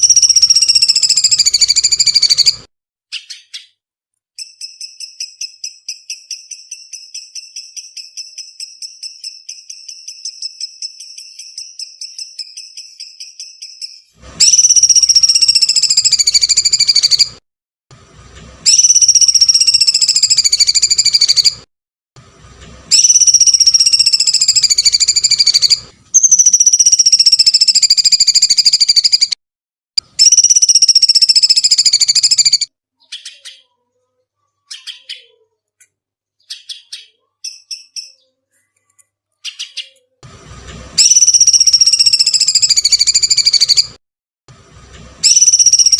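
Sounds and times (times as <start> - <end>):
harsh bird song phrases: 0.0 - 2.6, 30.9 - 35.6, 36.4 - 38.4
bird high trill: 0.0 - 3.8, 4.4 - 17.4, 18.7 - 21.6, 22.9 - 29.4, 30.1 - 33.8, 41.0 - 44.0, 45.2 - 45.9.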